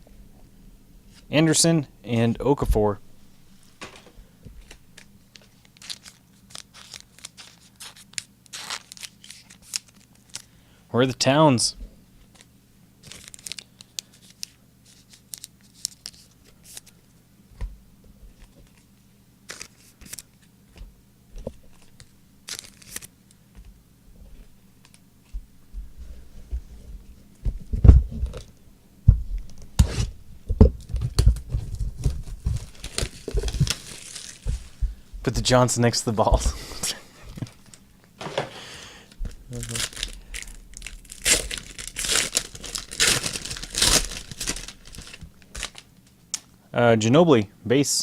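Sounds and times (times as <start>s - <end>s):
cards rustling and clicking: 3.8s - 10.5s, 12.2s - 17.0s, 19.5s - 23.7s, 30.9s - 34.9s, 39.2s - 46.5s
card packs tearing: 4.6s - 10.5s, 13.0s - 16.9s, 19.5s - 20.4s, 21.7s - 23.1s, 32.2s - 34.6s, 39.5s - 45.9s
low thumps: 34.4s - 35.5s.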